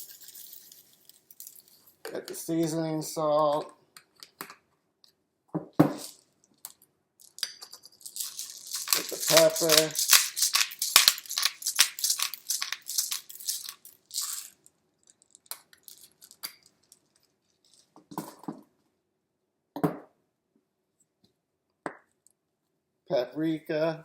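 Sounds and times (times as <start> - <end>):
pepper shaker rattling: 0.0 - 1.9, 7.2 - 17.9.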